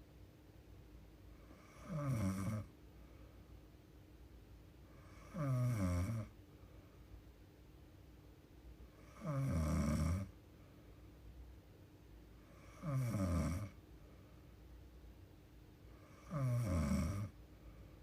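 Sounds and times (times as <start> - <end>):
woman snoring: 1.5 - 2.7, 5.0 - 6.3, 9.0 - 10.3, 12.5 - 13.8, 16.0 - 17.3.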